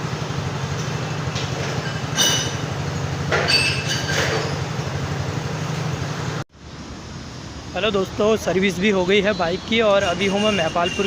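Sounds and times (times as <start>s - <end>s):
ringing metallic clinks: 1.7s - 2.6s.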